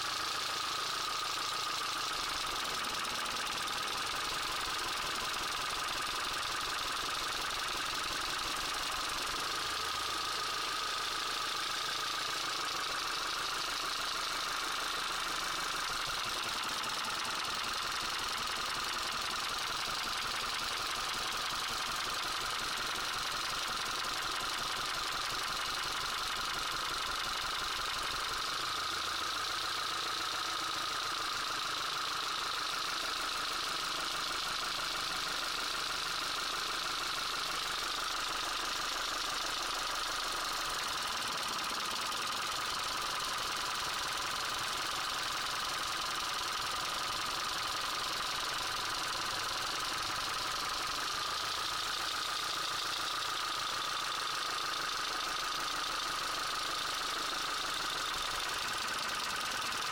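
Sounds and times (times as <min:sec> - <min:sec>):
car engine idling with knock: 0:00.1 - 0:59.9.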